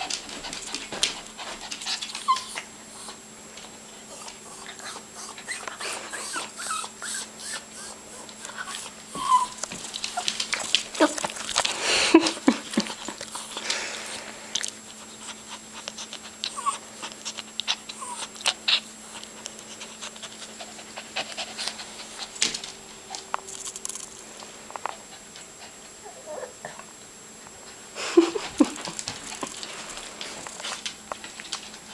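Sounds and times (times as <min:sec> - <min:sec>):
dog panting: 0:00.0 - 0:23.5, 0:24.6 - 0:26.9, 0:27.6 - 0:31.9
dog whining: 0:01.9 - 0:03.2, 0:04.1 - 0:11.5, 0:15.5 - 0:19.2, 0:26.0 - 0:26.9.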